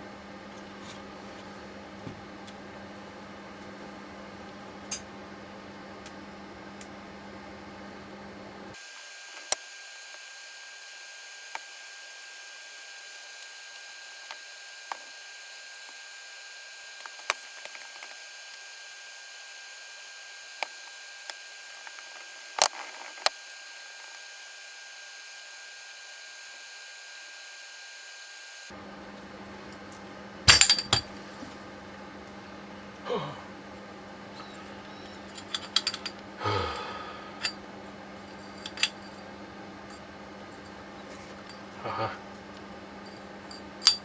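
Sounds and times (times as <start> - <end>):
metal tools clicking and clinking: 35.1 - 36.2, 38.3 - 39.2, 43.0 - 44.0.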